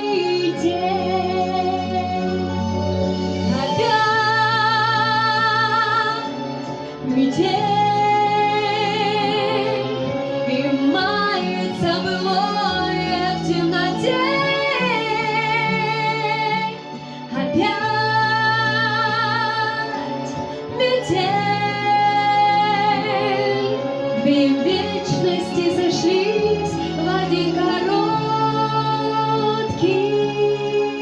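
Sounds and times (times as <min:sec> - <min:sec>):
instrumental accompaniment: 0:00.0 - 0:31.0.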